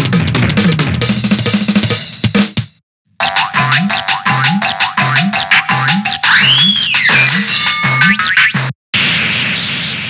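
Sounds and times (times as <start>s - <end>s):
polyphonic phone ringtone: 7.1s - 8.4s.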